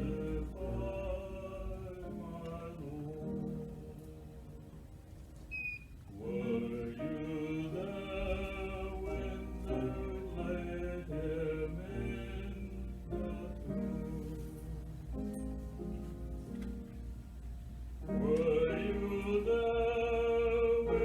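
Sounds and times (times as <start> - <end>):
choir singing: 0.0 - 4.2, 6.1 - 15.1, 18.0 - 21.0.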